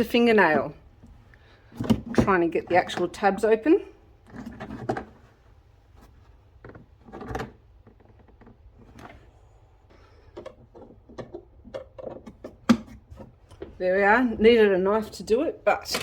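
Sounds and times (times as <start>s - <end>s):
plastic clicks scrapes and knocks: 6.0s - 9.3s, 10.0s - 13.7s.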